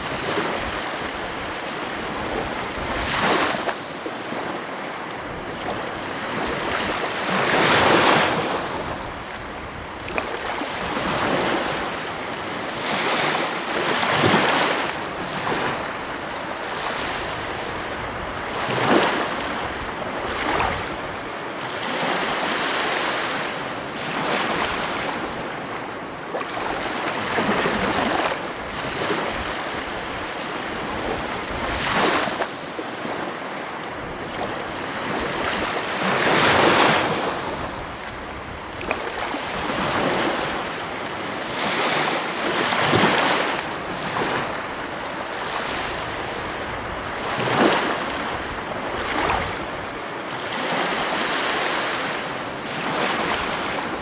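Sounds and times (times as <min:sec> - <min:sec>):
ocean surf crashing: 0:00.0 - 0:54.0.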